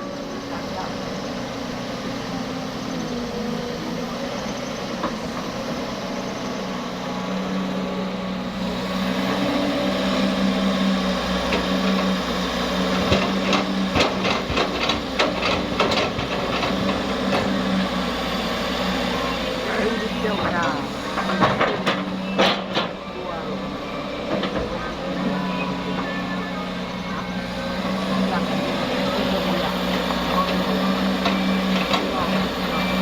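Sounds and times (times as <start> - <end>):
diesel engine running: 0.0 - 33.0
sharp knocks and clatters: 13.0 - 17.6, 21.2 - 23.0.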